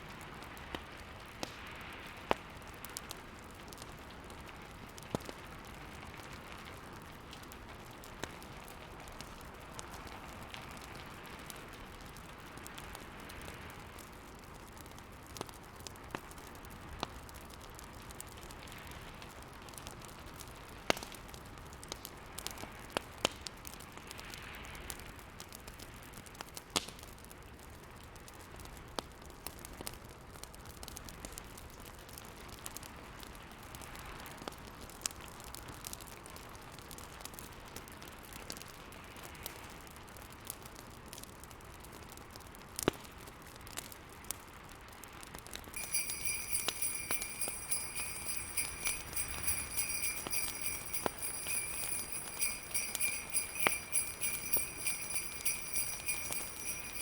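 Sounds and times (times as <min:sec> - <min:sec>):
fireplace crackling and popping: 0:45.8 - 0:57.0
jingle bells shaking: 0:45.8 - 0:57.0.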